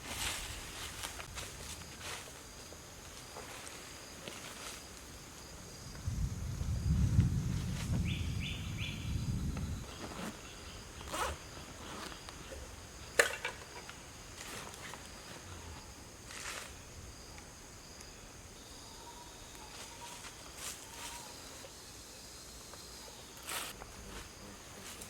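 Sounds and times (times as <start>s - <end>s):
faint insect drone: 0.0s - 25.0s
low rumble: 6.1s - 9.9s.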